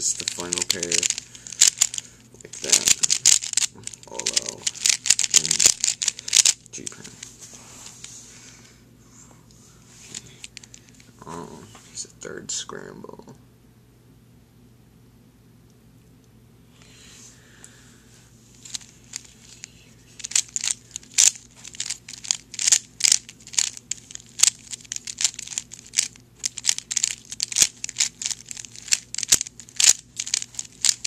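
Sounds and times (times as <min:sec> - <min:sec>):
puzzle cube plastic clicks: 0:00.1 - 0:07.1, 0:18.6 - 0:31.0.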